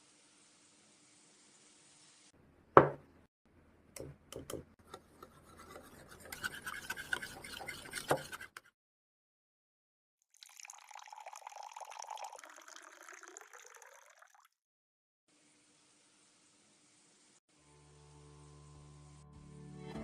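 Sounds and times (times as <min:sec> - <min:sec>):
utensil knocking: 0:02.8 - 0:03.1
scraping and stirring: 0:04.4 - 0:08.8.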